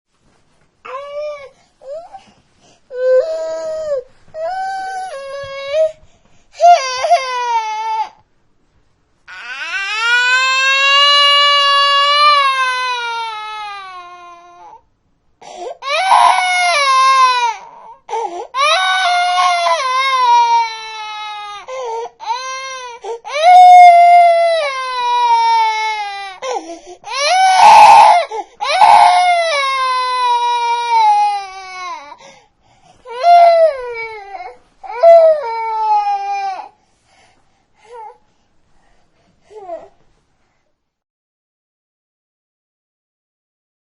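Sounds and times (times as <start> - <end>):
infant crying: 0.9 - 2.3, 2.9 - 6.0, 6.6 - 8.2, 9.3 - 14.8, 15.5 - 32.3, 33.1 - 36.7.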